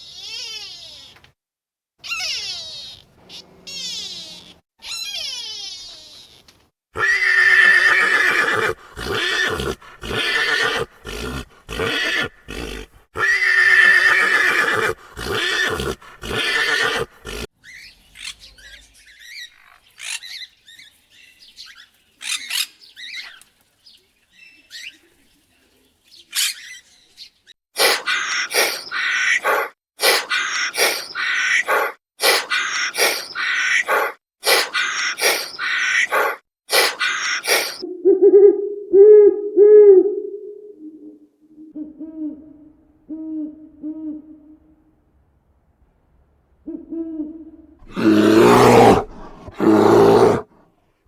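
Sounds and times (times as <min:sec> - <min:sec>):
loud pitched animal calls: 0:02.0 - 0:06.4, 0:07.0 - 0:17.5, 0:27.8 - 0:38.5, 0:47.8 - 0:50.5.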